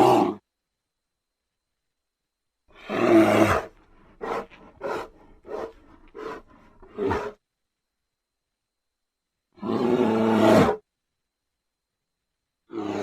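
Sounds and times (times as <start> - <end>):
bear roaring: 0.0 - 0.4, 2.8 - 7.4, 9.6 - 10.8, 12.7 - 13.0
bear grunts: 2.8 - 7.4.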